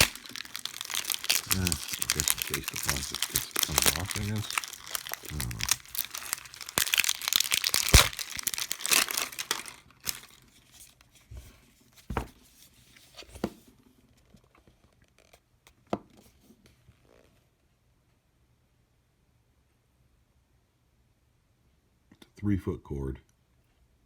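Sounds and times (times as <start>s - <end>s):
plastic packaging tearing: 0.0s - 10.5s.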